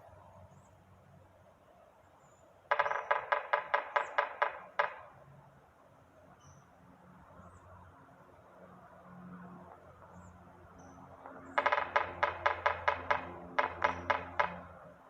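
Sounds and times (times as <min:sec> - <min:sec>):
woodpecker knocking: 0:02.7 - 0:05.2, 0:11.2 - 0:15.0.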